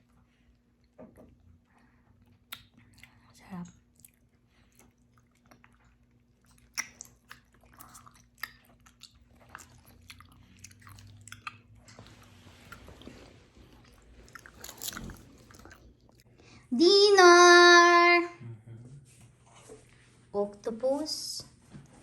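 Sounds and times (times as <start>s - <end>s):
quiet chewing: 0.0s - 16.6s
wet mouth clicks: 2.3s - 3.2s, 6.5s - 12.0s.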